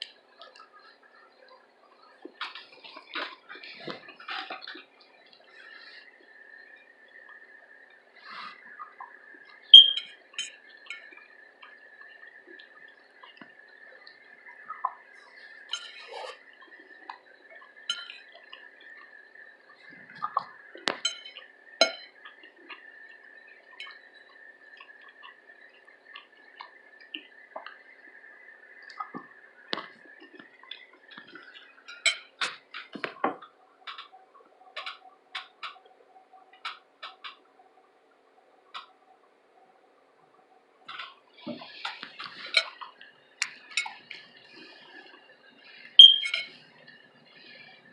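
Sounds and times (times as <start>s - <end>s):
wet chewing: 2.2s - 5.0s.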